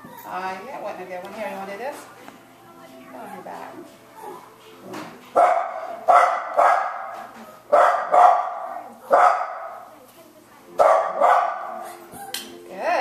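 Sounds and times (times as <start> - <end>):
dog barking: 5.4 - 9.8, 10.8 - 12.0.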